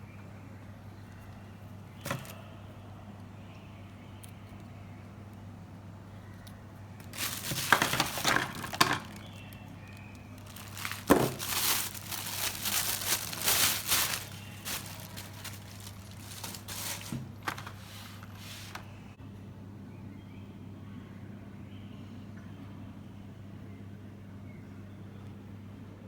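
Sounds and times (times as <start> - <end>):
packaging crinkling and rustling: 2.0 - 2.4, 7.0 - 18.9.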